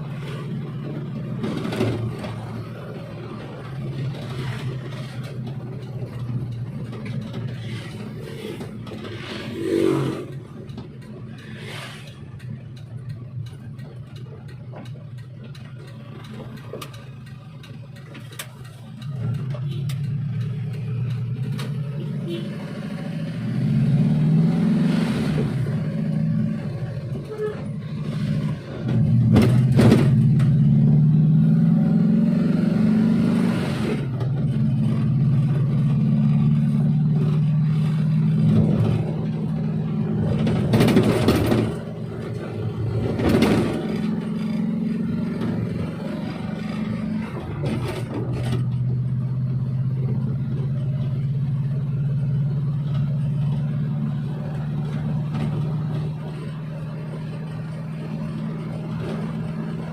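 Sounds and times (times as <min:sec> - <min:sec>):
minivan engine running: 0:00.0 - 0:59.9
rushes of noise: 0:07.5 - 0:10.6.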